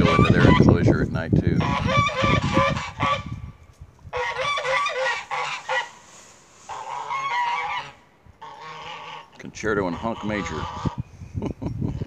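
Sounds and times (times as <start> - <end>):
geese honking: 0.0 - 0.7, 1.6 - 3.4, 4.1 - 11.0.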